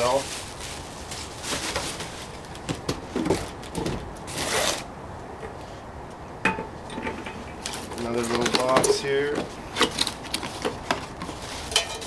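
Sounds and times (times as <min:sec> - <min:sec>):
packaging rustling and scraping: 0:00.0 - 0:04.9, 0:07.6 - 0:12.0.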